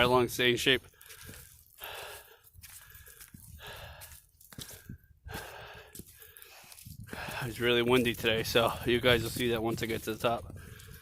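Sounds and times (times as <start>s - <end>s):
person breathing hard: 0.9s - 7.6s, 10.5s - 11.0s
wind rumble on microphone: 6.6s - 11.0s.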